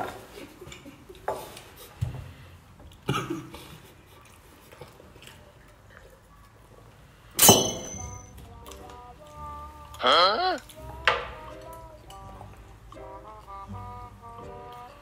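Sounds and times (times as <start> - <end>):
tableware clang ringing: 7.4 - 8.4.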